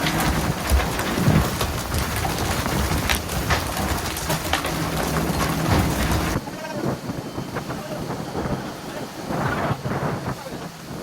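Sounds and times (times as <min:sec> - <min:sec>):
sharp knocks and splashes: 0:00.0 - 0:06.4
low rumble: 0:00.0 - 0:11.0
water splashing and spraying: 0:00.0 - 0:11.0.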